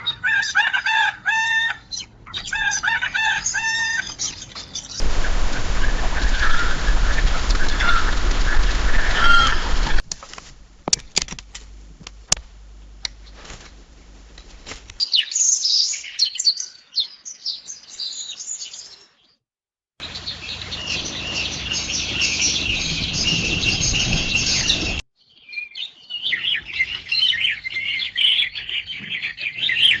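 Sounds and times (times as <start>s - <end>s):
birds chirping and calling: 0.0s - 10.0s, 20.1s - 30.0s
background noise: 0.0s - 19.4s
sharp clicks: 9.4s - 13.2s.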